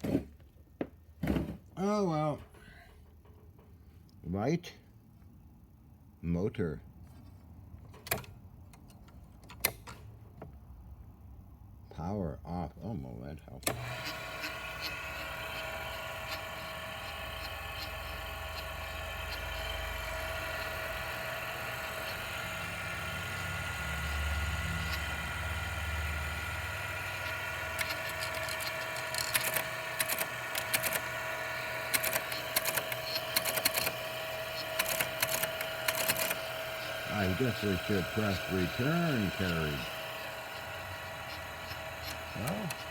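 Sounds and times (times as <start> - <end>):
electric motor humming: 13.7 - 42.9
teletype clattering clicks: 26.4 - 42.9.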